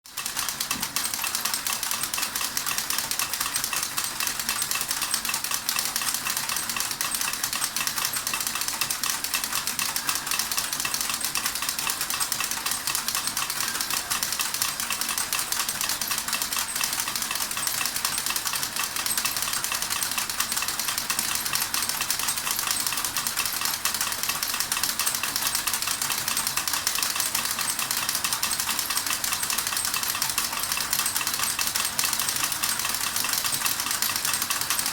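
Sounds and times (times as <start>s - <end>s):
model steam engine clattering: 0.1s - 34.9s.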